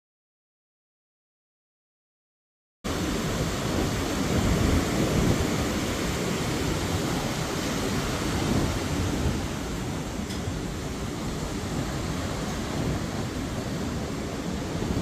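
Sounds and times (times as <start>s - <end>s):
ocean waves washing onto beach: 2.9s - 15.0s.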